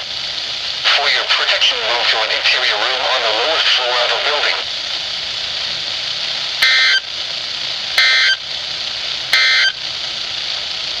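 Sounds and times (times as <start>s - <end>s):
steady hiss: 0.0s - 11.0s
digital data tone bursts: 6.6s - 7.1s, 8.0s - 8.4s, 9.3s - 9.8s.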